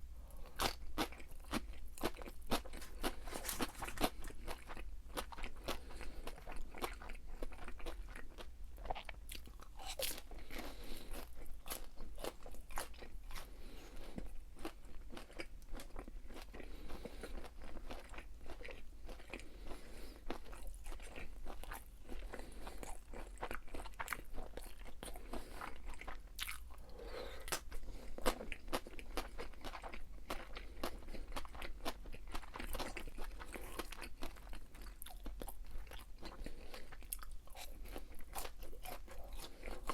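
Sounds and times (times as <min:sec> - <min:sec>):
crunchy chewing of fried food: 0:00.2 - 0:39.9.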